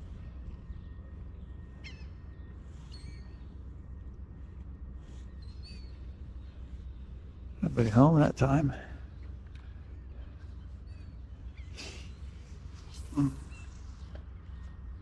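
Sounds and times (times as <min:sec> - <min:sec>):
low background rumble: 0:00.0 - 0:15.0
short bird calls: 0:09.0 - 0:15.0.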